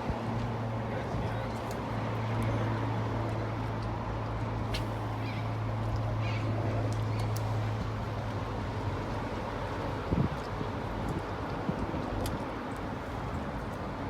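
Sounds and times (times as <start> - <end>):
wind noise: 10.0 - 14.0.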